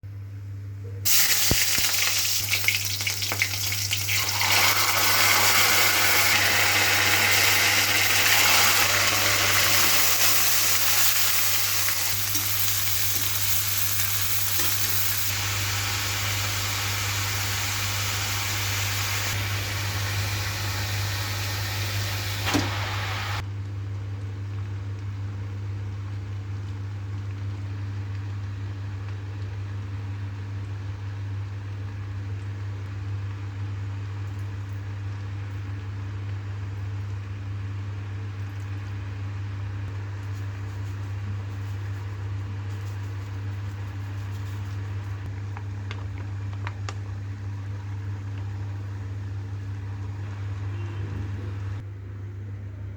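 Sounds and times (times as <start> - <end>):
food sizzling in pan: 1.1 - 23.4.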